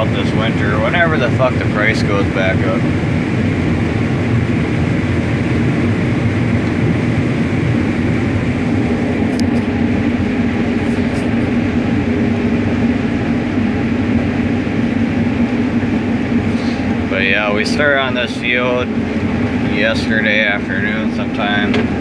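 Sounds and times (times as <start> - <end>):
combine harvester drone: 0.0 - 22.0.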